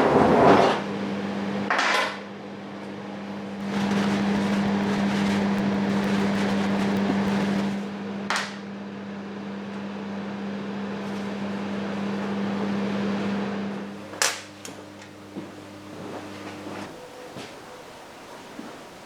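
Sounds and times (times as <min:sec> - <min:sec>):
machine hum with hiss: 0:03.3 - 0:08.5, 0:09.9 - 0:19.0.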